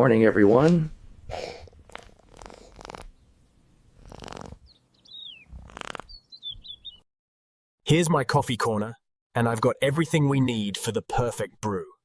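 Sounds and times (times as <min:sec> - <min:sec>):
cat purring: 0:01.8 - 0:03.1, 0:04.0 - 0:04.7.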